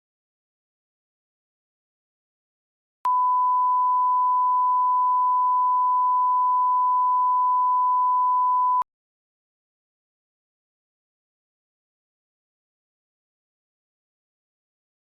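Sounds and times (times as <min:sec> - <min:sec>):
electronic beep tone: 0:03.1 - 0:08.8.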